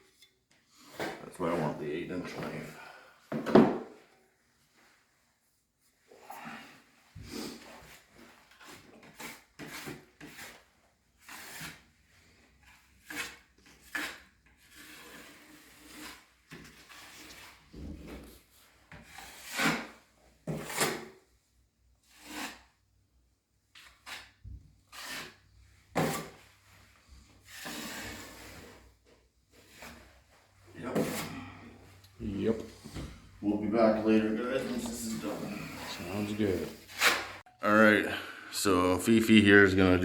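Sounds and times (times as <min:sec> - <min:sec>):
taping knife scraping compound: 0:07.5 - 0:17.6, 0:18.9 - 0:21.3, 0:22.0 - 0:22.8, 0:23.7 - 0:29.0, 0:29.6 - 0:31.5, 0:34.6 - 0:37.4.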